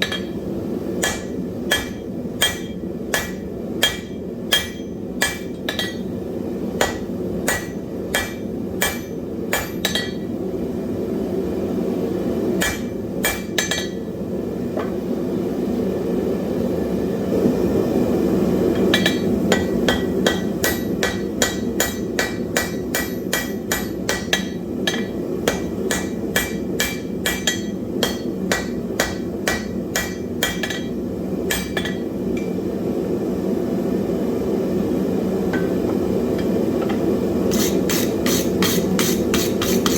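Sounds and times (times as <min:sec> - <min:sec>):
hammer striking iron on anvil: 0:00.0 - 0:00.4, 0:01.0 - 0:06.1, 0:06.8 - 0:10.3, 0:12.6 - 0:14.1, 0:18.8 - 0:32.6, 0:35.5 - 0:39.9.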